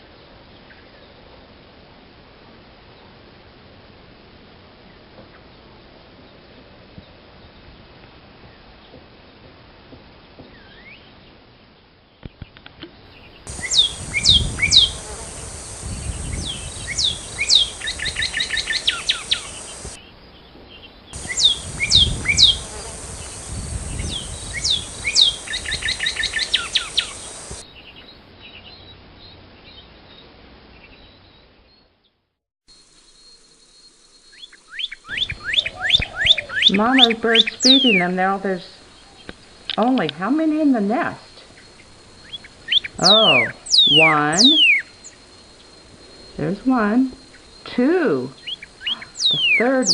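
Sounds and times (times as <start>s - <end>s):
faint bird chirps: 13.1s - 29.8s, 32.8s - 39.9s, 41.3s - 49.9s
bird song with whistles: 13.6s - 15.0s, 16.0s - 19.9s, 21.2s - 22.8s, 23.9s - 27.4s, 34.4s - 38.0s, 42.7s - 45.2s, 48.4s - 49.9s.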